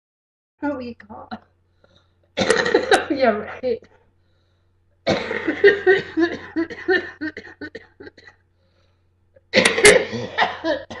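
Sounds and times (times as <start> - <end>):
person wheezy coughing: 2.4 - 3.1, 5.1 - 8.4, 9.5 - 11.0.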